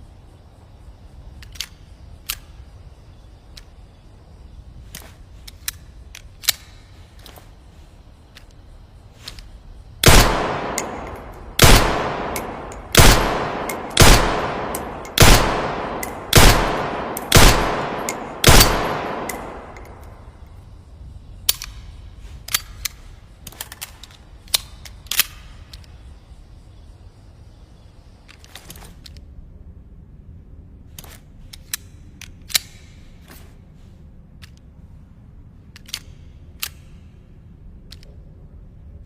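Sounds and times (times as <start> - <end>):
light clicks: 1.3 - 2.6, 10.4 - 20.6
handgun shots echoing: 10.0 - 20.3.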